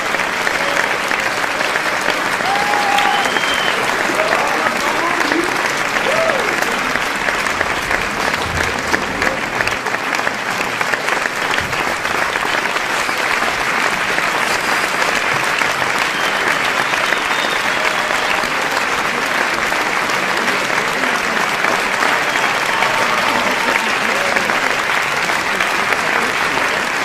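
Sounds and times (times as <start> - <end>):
crowd shouting: 0.0 - 9.4
audience applauding: 0.0 - 27.0.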